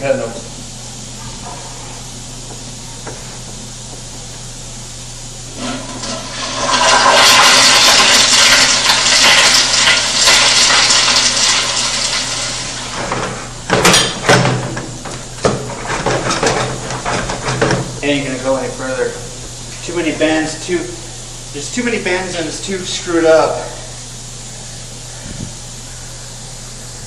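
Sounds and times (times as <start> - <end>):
toilet flushing: 5.5 - 19.3.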